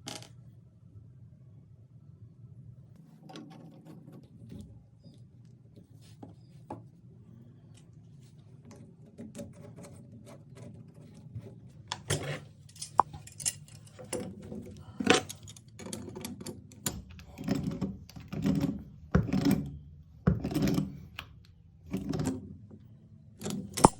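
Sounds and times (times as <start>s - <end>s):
small parts clicking and clinking: 12.0s - 14.4s, 15.0s - 18.7s, 23.4s - 23.9s.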